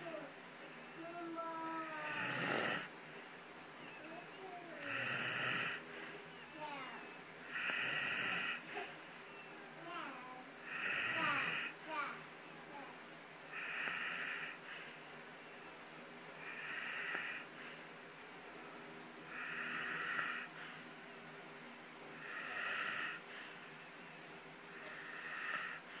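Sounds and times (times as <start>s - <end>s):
man snoring loudly: 2.0s - 2.9s, 4.8s - 5.8s, 7.5s - 8.6s, 10.7s - 11.7s, 13.6s - 14.6s, 16.4s - 17.4s, 19.3s - 20.5s, 22.2s - 23.2s, 24.8s - 25.8s.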